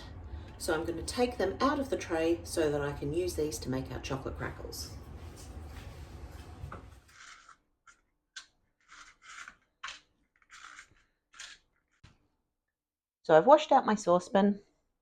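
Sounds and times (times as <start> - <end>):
paper liners scraping and crinkling: 5.3 - 8.0, 8.8 - 12.0.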